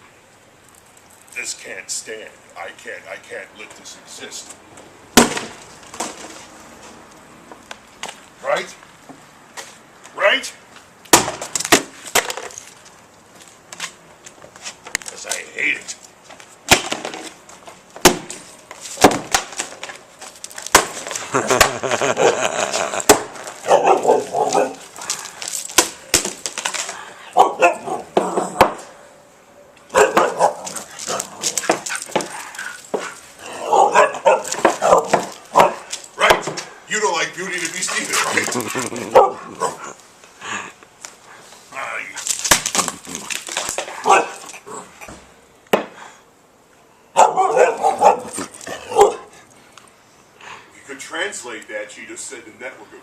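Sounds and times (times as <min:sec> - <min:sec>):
sharp knocks of breaking: 0:05.2 - 0:06.2, 0:11.1 - 0:12.6, 0:16.7 - 0:17.2, 0:18.0 - 0:18.4, 0:19.0 - 0:19.9, 0:20.6 - 0:21.9, 0:25.4 - 0:26.9, 0:42.2 - 0:43.8
dog barking and growling: 0:22.0 - 0:23.0, 0:23.6 - 0:24.9, 0:27.3 - 0:28.7, 0:29.9 - 0:32.8, 0:33.4 - 0:36.4, 0:37.9 - 0:40.0, 0:43.9 - 0:45.0, 0:47.2 - 0:49.4.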